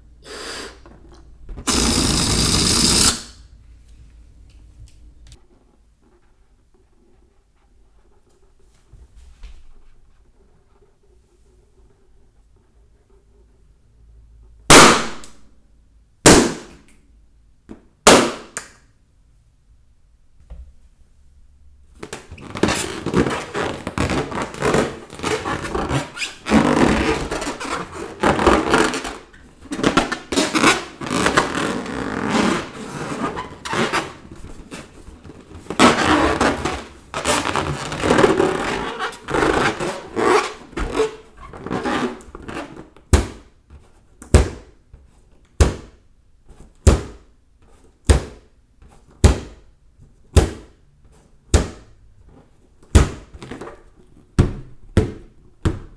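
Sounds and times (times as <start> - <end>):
balloon pops: 1.6 - 3.4, 16.3 - 16.8, 18.1 - 18.8
balloons rubbing and squeaking: 1.6 - 3.5, 22.3 - 43.0.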